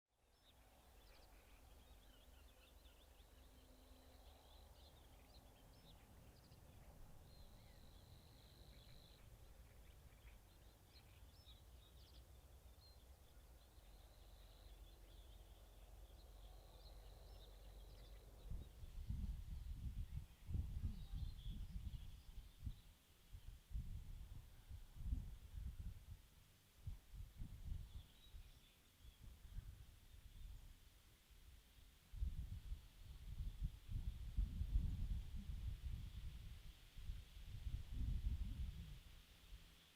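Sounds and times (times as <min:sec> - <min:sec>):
bird chirps and calls: 0:00.4 - 0:22.8
low wind rumble: 0:11.6 - 0:22.8, 0:32.2 - 0:39.1.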